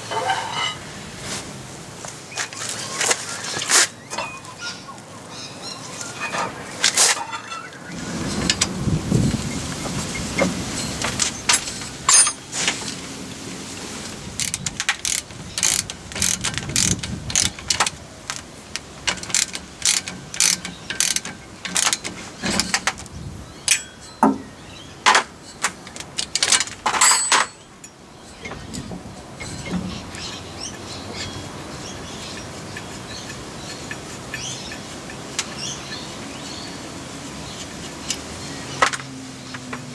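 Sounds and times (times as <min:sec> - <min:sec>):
metallic clinks: 0:10.8 - 0:12.5, 0:27.0 - 0:28.0
socket ratchet clicking: 0:14.4 - 0:22.2.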